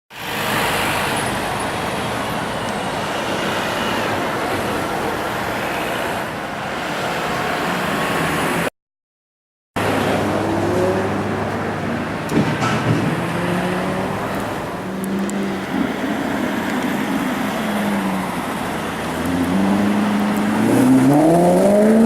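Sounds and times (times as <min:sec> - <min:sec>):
road noise: 0:00.1 - 0:08.7, 0:09.8 - 0:22.0
car engine and exhaust revving: 0:09.8 - 0:22.0.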